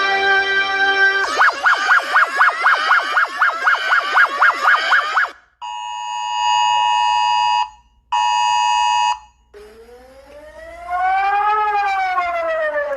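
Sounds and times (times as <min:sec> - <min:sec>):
rising siren: 0:00.0 - 0:05.4, 0:09.5 - 0:12.9
electronic alarm tone blasts: 0:01.2 - 0:12.2.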